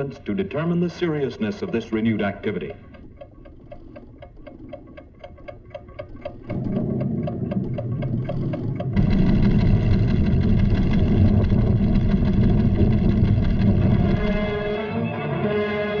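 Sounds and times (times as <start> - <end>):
instrument ticking: 0.0 - 13.4
low rumble: 6.5 - 15.0.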